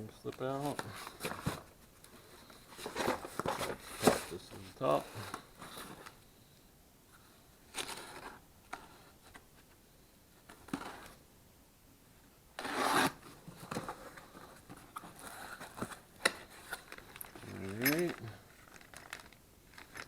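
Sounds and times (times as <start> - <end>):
packaging scraping and rustling: 0.5 - 6.2, 7.7 - 9.2, 12.6 - 20.0.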